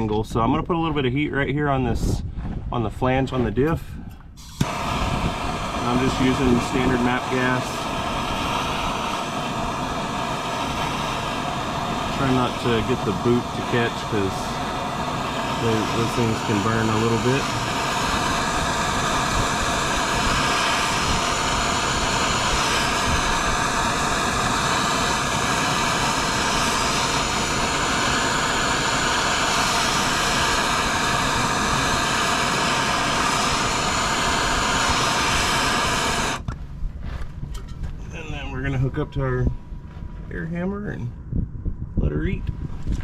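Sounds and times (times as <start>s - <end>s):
gas torch hissing: 4.4s - 36.6s.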